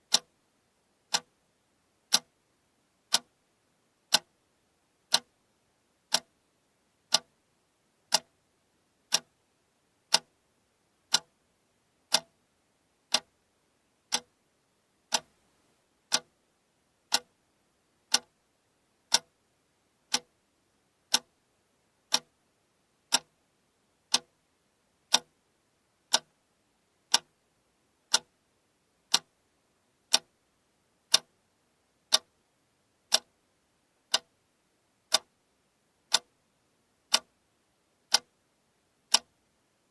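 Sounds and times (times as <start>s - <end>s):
alarm clock ticking: 9.1s - 9.3s, 15.1s - 15.3s.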